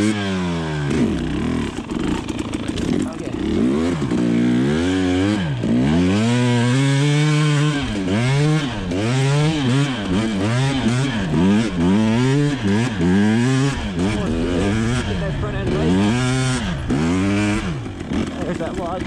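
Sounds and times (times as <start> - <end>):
two-stroke engine revving: 0.0 - 19.0.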